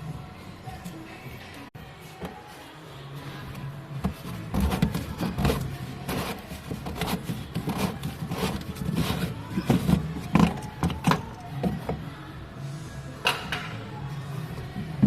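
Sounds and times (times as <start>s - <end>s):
hand tools clinking and scraping: 4.0s - 12.0s.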